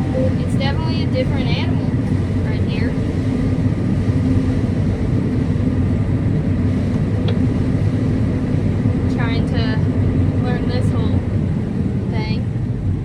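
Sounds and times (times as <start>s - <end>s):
combine harvester engine drone: 0.0s - 13.0s.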